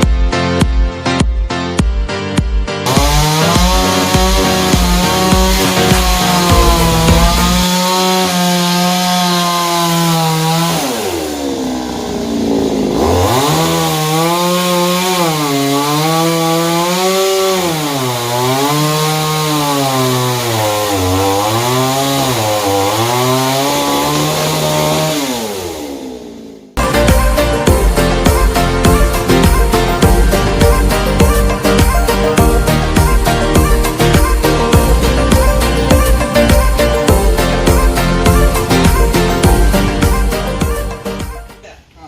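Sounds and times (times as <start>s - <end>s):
chainsaw cutting wood: 2.8s - 41.4s.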